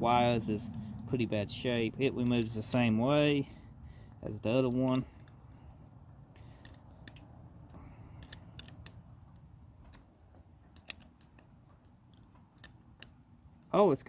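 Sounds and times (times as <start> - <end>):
wrench clicking on metal bolts: 0.0 - 0.8, 2.1 - 3.5, 4.3 - 5.7, 6.5 - 13.8
low steady hum: 0.0 - 14.0.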